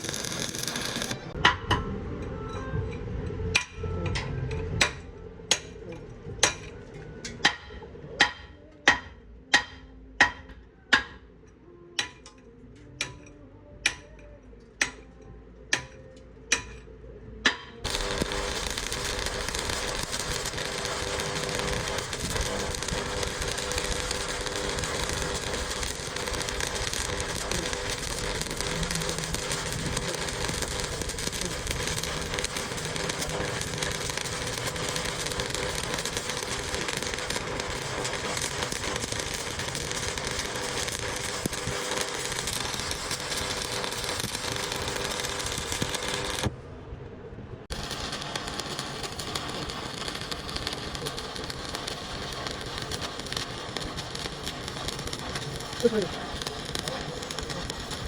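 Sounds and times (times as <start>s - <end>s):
continuous crackling: 0.0s - 1.4s, 17.8s - 46.5s, 47.7s - 58.0s
steady hum: 17.8s - 58.0s.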